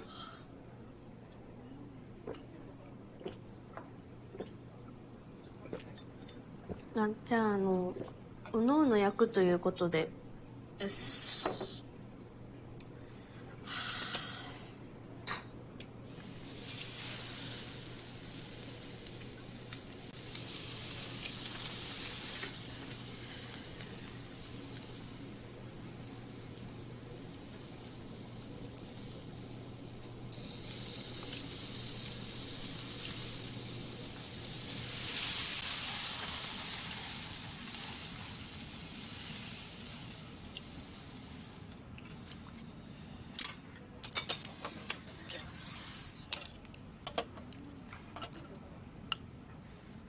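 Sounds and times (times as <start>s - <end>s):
meat sizzling on a grill: 16.0s - 41.8s.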